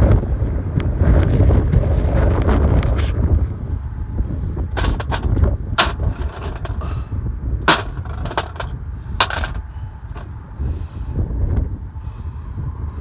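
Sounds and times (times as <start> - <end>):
sharp knocks: 4.8 - 6.9, 7.7 - 10.3.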